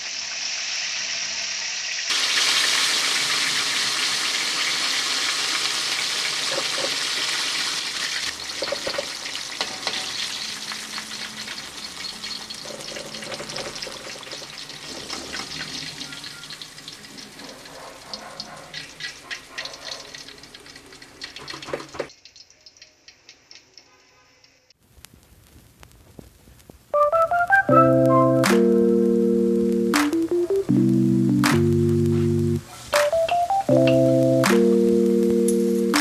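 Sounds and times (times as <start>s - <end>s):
food sizzling in hot oil: 0.0s - 24.7s.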